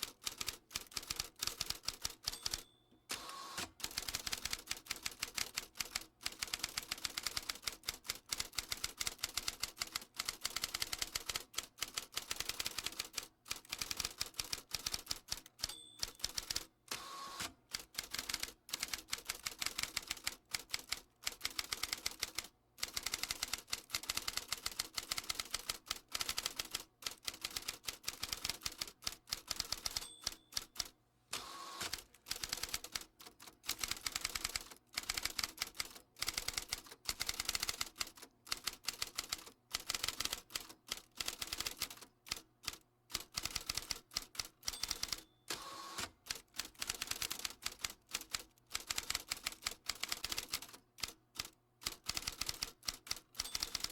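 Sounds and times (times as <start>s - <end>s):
typewriter bell ding: 2.1s - 3.3s, 15.6s - 16.6s, 29.8s - 30.9s, 44.6s - 45.6s, 53.4s - 53.9s
typewriter key strikes: 52.0s - 53.9s.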